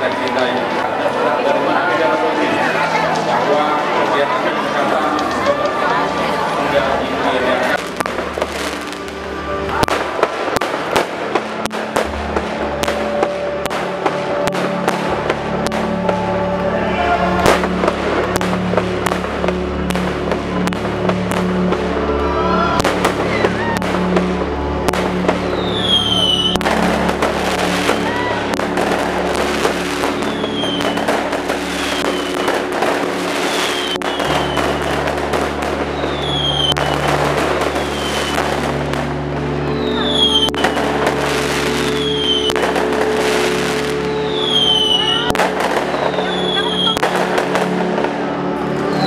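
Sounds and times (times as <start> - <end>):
background music: 0.0 - 49.0
fireworks bangs and crackling: 0.0 - 49.0
falling firework whistles: 31.7 - 32.6, 33.4 - 35.1, 35.9 - 36.8, 41.8 - 42.6, 44.1 - 45.2.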